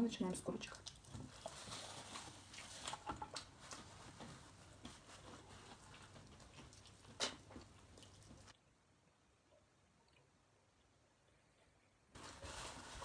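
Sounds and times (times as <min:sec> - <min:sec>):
faint crunching and clicks: 0:00.6 - 0:08.7.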